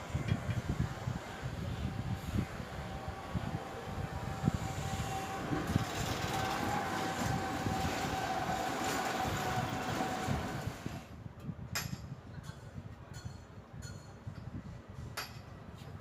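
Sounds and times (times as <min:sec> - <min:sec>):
machine whining: 0:00.0 - 0:11.0.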